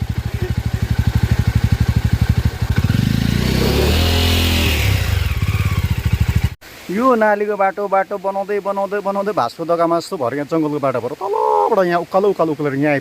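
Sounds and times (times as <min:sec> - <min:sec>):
motorcycle engine revving: 0:00.0 - 0:06.6.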